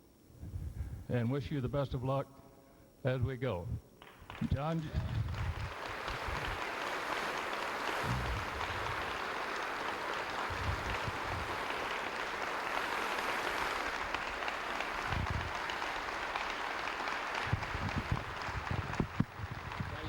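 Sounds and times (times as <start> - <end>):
audience applauding: 4.0 - 20.0.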